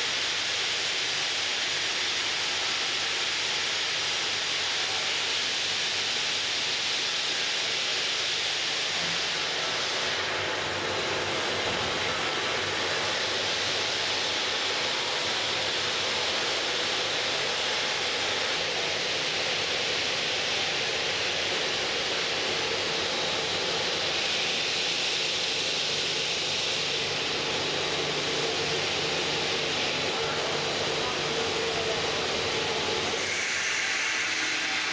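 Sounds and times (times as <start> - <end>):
stone cutting machine hissing: 0.0 - 34.9.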